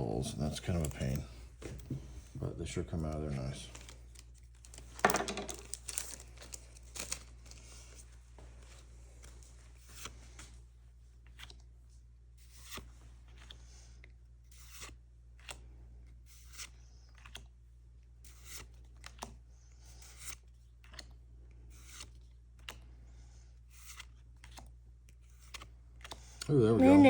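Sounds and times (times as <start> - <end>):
faint steady hum: 0.0 - 27.0
cards sliding swish: 12.4 - 13.6.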